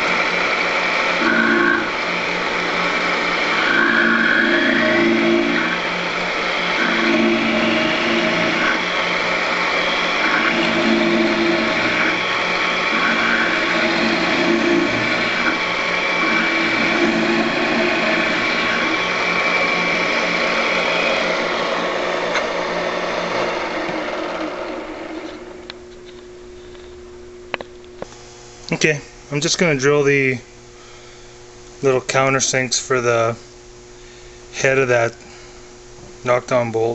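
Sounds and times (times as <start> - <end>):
drill press boring into wood: 0.0 - 25.7
low hum: 0.0 - 29.8.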